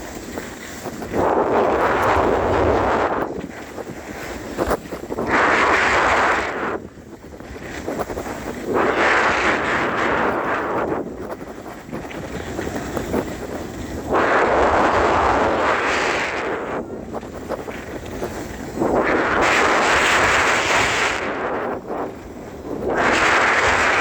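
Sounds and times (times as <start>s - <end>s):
skis scraping on snow: 0.0s - 24.0s
wind on microphone: 0.0s - 24.0s.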